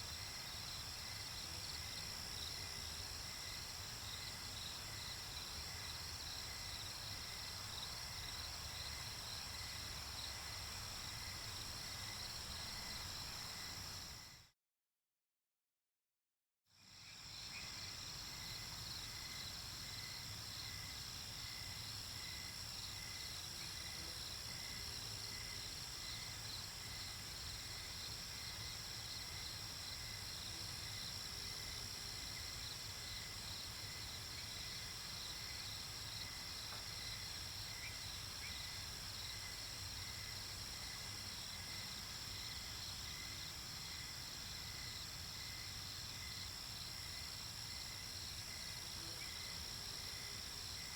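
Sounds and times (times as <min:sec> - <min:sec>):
crickets chirping: 0:00.0 - 0:14.5, 0:16.8 - 0:50.9.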